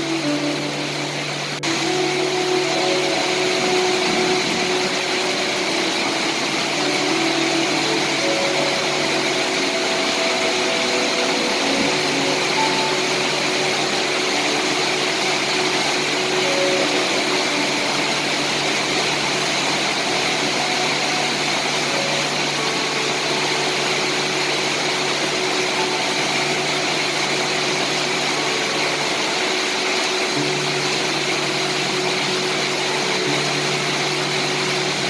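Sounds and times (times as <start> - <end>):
steady rain falling: 0.0 - 35.0.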